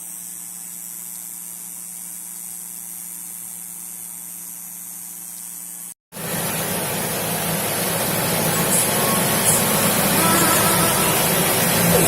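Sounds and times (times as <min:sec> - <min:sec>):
low hum: 0:06.3 - 0:12.0
loud rushing noise: 0:08.8 - 0:12.0.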